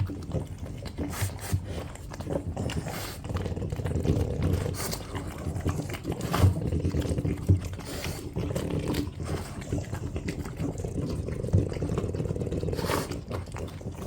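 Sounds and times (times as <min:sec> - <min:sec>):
dog grunts: 0:00.0 - 0:14.0
dogs eating noisily: 0:00.0 - 0:14.0.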